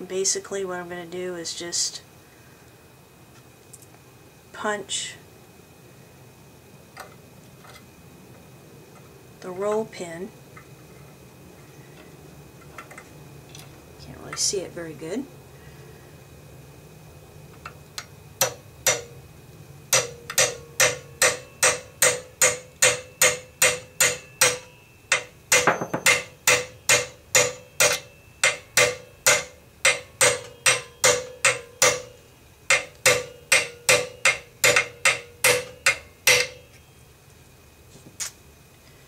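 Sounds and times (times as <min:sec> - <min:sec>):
hammer striking metal pin: 0:18.4 - 0:19.2, 0:19.9 - 0:36.7.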